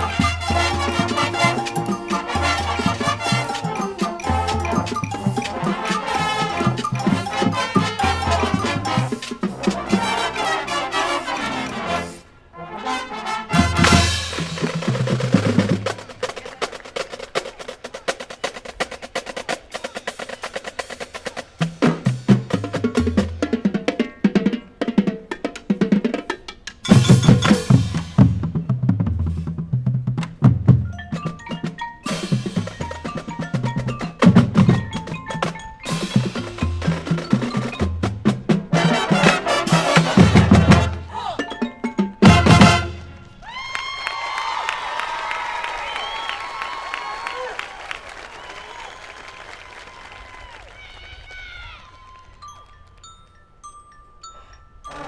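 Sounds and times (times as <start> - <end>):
snare drum percussion pattern: 0.0 - 12.1, 13.5 - 43.3
marching band brass hit: 0.0 - 16.5, 35.9 - 41.4, 42.2 - 43.5.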